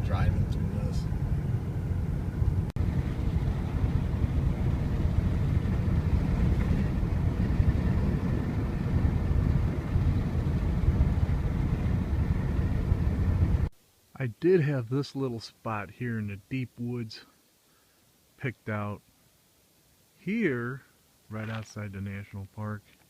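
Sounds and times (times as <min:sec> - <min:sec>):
vehicle cabin road rumble: 0:00.0 - 0:13.7.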